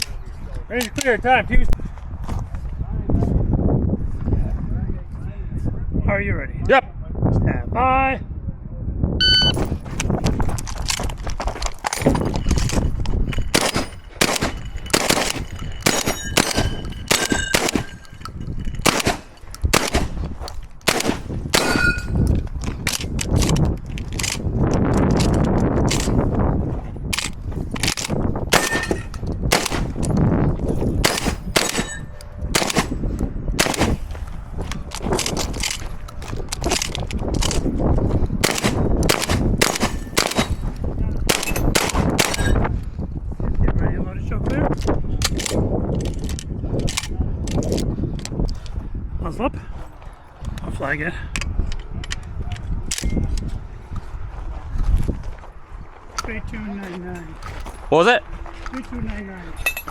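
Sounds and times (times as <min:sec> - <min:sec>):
low rumble of wind: 0:00.0 - 0:59.9
metallic ring of steel targets: 0:12.2 - 0:19.4, 0:21.6 - 0:22.3, 0:28.5 - 0:29.2, 0:31.0 - 0:33.0
shotgun shots: 0:13.5 - 0:18.0, 0:18.8 - 0:20.2, 0:20.9 - 0:22.0, 0:28.5 - 0:30.0, 0:31.0 - 0:33.0, 0:33.6 - 0:34.1, 0:38.4 - 0:40.6, 0:41.3 - 0:42.4.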